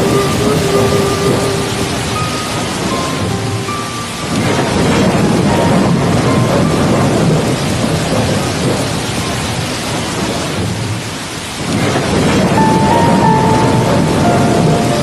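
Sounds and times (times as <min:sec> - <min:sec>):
heavy rain pouring: 0:00.0 - 0:15.0
deep rolling thunder: 0:04.2 - 0:15.0.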